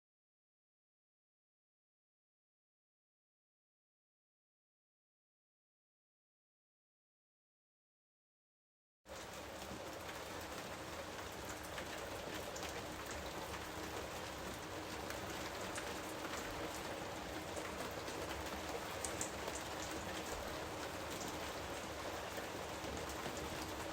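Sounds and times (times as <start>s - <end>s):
steady rain: 9.1s - 23.9s.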